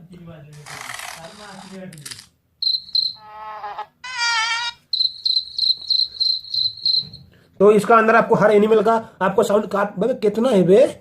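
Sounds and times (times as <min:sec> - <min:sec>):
recorded cricket chirping: 0:02.6 - 0:03.3, 0:04.8 - 0:07.3
short pitched calls: 0:02.6 - 0:03.4, 0:04.2 - 0:07.2.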